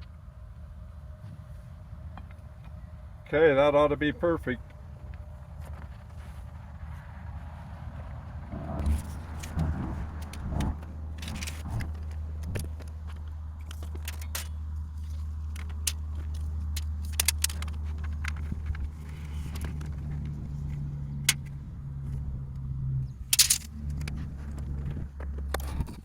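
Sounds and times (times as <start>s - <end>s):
engine humming: 0.0s - 26.0s
higher tone: 8.5s - 13.6s
clicks and knocks of handling: 8.6s - 22.2s, 23.3s - 26.0s.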